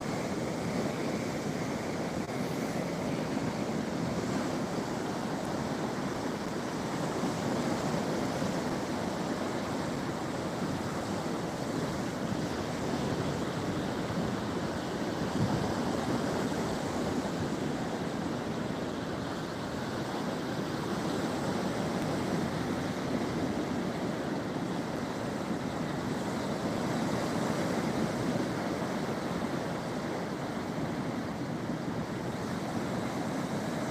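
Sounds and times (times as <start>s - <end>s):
waves washing ashore: 0.0s - 33.9s.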